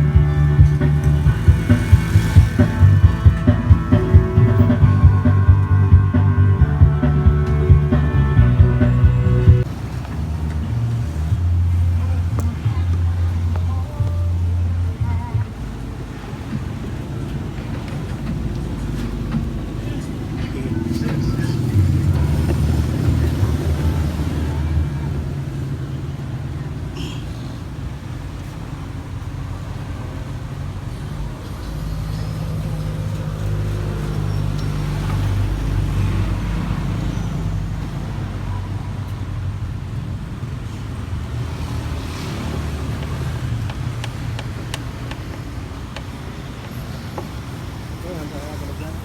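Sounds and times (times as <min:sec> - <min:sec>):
motorcycle engine running: 0:00.0 - 0:15.7, 0:18.9 - 0:26.2
road and traffic noise: 0:00.0 - 0:49.0.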